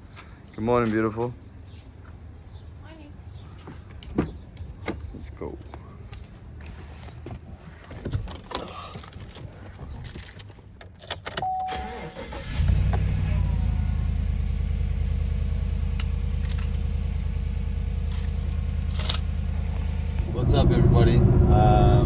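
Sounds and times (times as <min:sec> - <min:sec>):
short beep: 0:11.4 - 0:11.8
vehicle engine starting and idling: 0:11.4 - 0:22.0.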